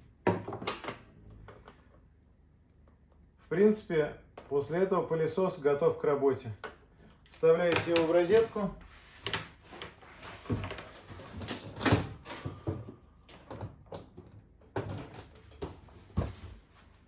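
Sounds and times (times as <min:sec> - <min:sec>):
knocks and clicks of vacuum handling: 0:09.2 - 0:16.5.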